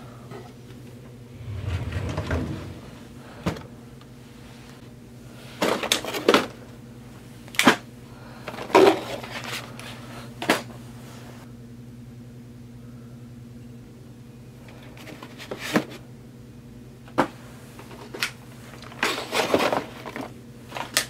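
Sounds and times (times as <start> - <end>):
steady low hum: 0.0 - 5.5, 9.8 - 14.6.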